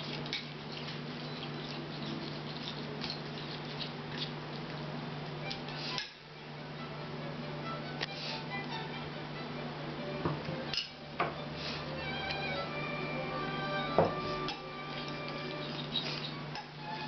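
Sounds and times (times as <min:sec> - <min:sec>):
utensil scraping a bowl: 0:00.0 - 0:04.3, 0:14.1 - 0:17.0
steady low hum: 0:00.0 - 0:17.0.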